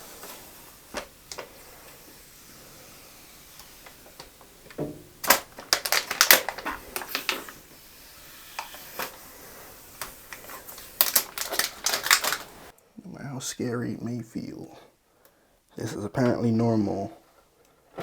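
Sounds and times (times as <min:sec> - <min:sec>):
computer parts clicking and rattling: 0:03.4 - 0:12.7.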